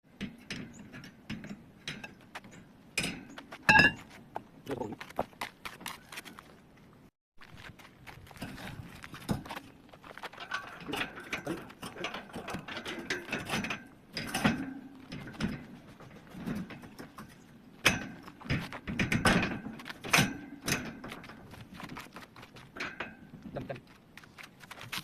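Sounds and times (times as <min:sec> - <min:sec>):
metal tools clanking: 0:00.2 - 0:04.2, 0:10.3 - 0:21.6.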